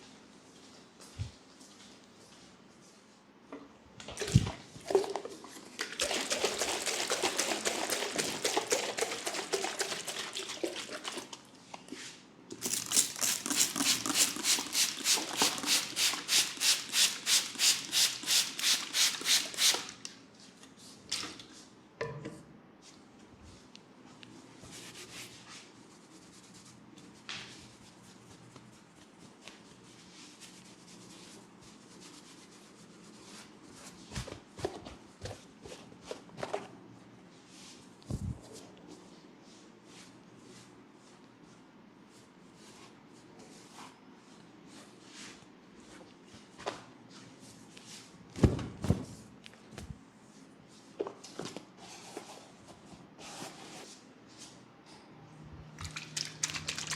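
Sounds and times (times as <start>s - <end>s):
hands rubbing hair and skin: 24.7s - 34.0s.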